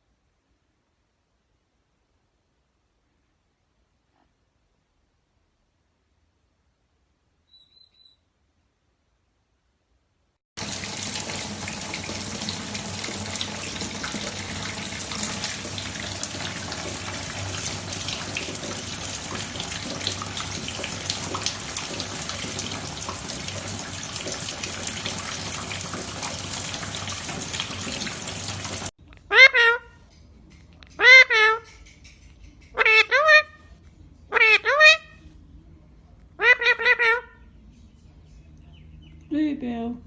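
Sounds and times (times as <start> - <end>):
running water rushing: 10.6 - 29.0.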